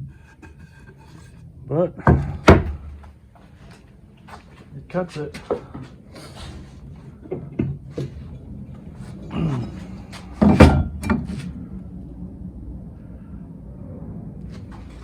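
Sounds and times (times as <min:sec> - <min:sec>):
short scraping groan: 0:00.0 - 0:01.6, 0:08.8 - 0:10.4
knocks on workbench: 0:02.1 - 0:03.0
loud wooden thunk: 0:02.1 - 0:03.1, 0:10.4 - 0:11.2.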